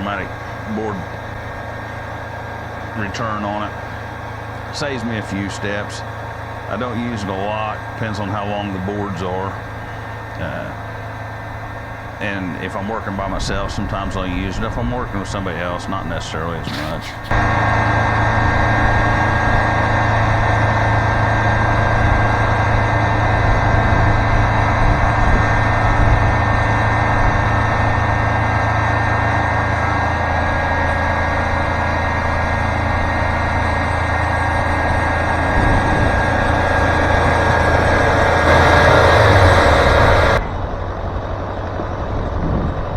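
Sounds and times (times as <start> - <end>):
sawmill engine humming: 0.0 - 42.9
band saw cutting: 15.1 - 40.5.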